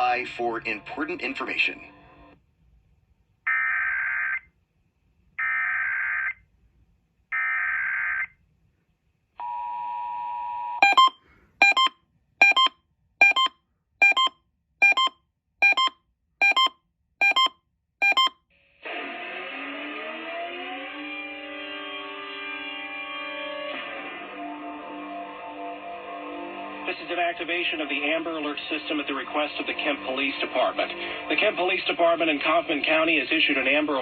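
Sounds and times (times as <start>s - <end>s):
two-tone attention signal: 10.8s - 18.3s
short beeps: 10.8s - 18.4s
music: 22.6s - 32.9s.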